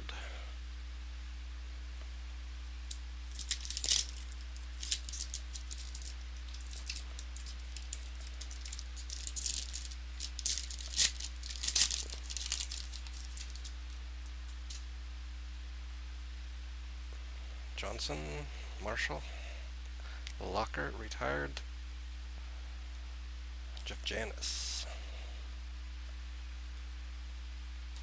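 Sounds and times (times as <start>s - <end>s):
steady low hum: 0.0s - 28.0s
trading cards crinkling and scraping: 2.8s - 14.9s.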